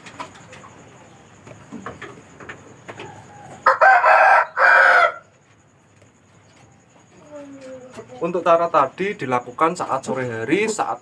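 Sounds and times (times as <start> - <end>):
rooster crowing: 2.9 - 5.4.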